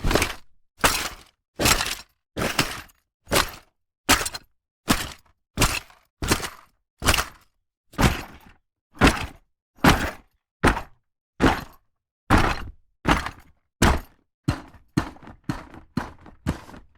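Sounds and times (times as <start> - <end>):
tool bag clunks and clatters: 0.0 - 7.4, 8.0 - 16.9.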